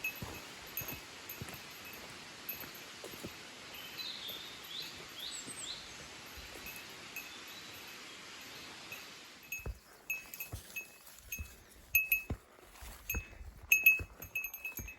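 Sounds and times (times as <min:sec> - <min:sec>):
small bell tinkling: 0:00.0 - 0:03.2, 0:06.2 - 0:08.1, 0:08.9 - 0:14.9
outdoor background hiss: 0:00.0 - 0:12.3.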